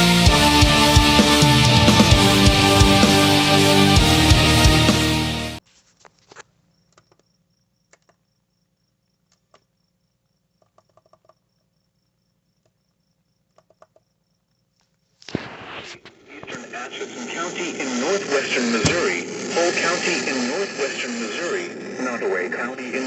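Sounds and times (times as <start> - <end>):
rock music: 0.0 - 5.6
loud radio sound: 15.3 - 23.0.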